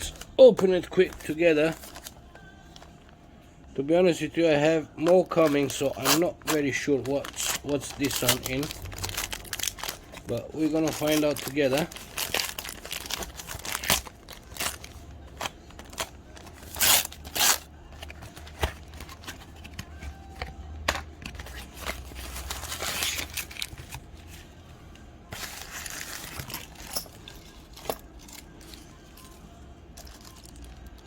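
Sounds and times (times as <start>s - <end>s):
packaging ripping and crinkling: 1.6s - 2.2s, 5.2s - 24.0s, 25.4s - 29.3s, 30.0s - 31.0s.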